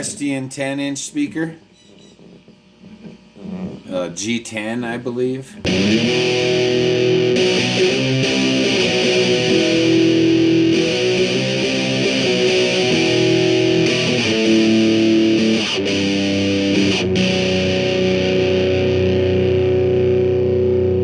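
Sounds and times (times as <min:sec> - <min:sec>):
electric guitar notes and chords: 0:05.7 - 0:21.0.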